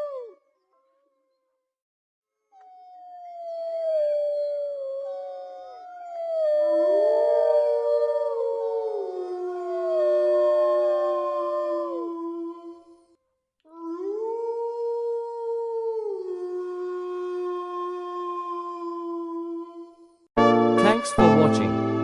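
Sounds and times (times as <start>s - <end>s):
canines howling together: 2.7s - 13.0s, 13.7s - 20.0s.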